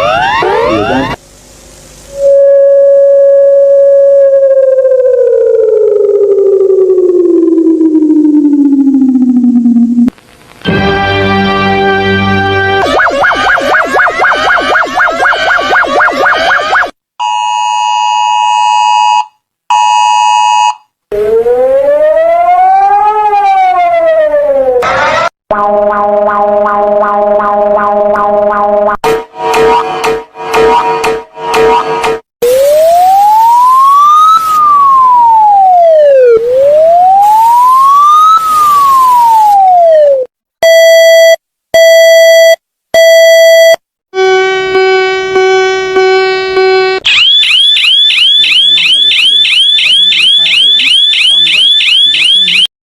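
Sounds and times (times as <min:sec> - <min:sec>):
harsh multi-tone alert tone: 0:00.0 - 0:01.2, 0:12.1 - 0:17.4, 0:24.8 - 0:33.6
rising and falling siren: 0:00.0 - 0:01.2, 0:02.1 - 0:10.1, 0:10.7 - 0:31.8, 0:32.4 - 0:40.3, 0:44.2 - 0:52.7
electronic alert chord: 0:25.5 - 0:30.8.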